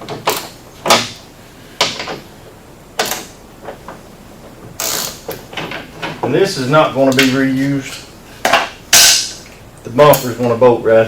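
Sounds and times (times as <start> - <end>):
sharp clicks and knocks: 0.0 - 1.2, 1.8 - 2.3, 3.0 - 6.4.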